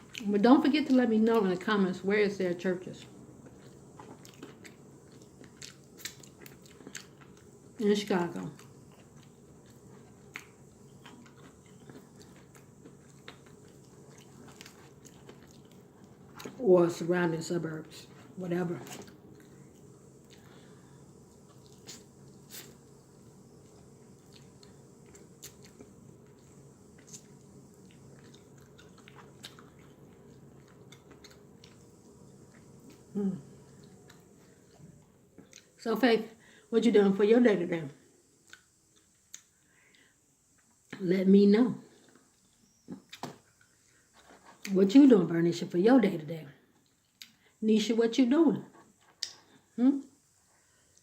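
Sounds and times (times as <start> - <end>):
person chewing: 0.0 - 0.3, 3.0 - 7.6, 8.4 - 16.6, 18.2 - 35.8, 38.4 - 39.6
low room hum: 0.0 - 51.0.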